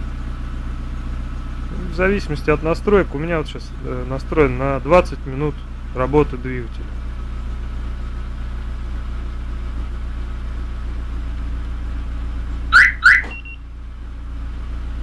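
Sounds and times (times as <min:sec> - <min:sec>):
car engine idling: 0:00.0 - 0:15.0
car alarm rising chirps: 0:12.6 - 0:13.7
brief high beep: 0:12.8 - 0:13.6.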